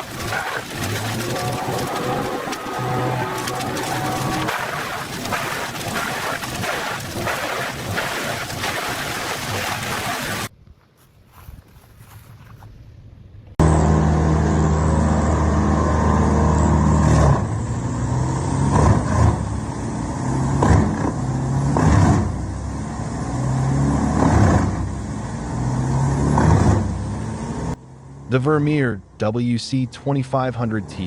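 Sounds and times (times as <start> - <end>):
wood chipper engine droning: 0.0 - 8.5, 13.6 - 28.2
wood being chipped: 0.0 - 8.6.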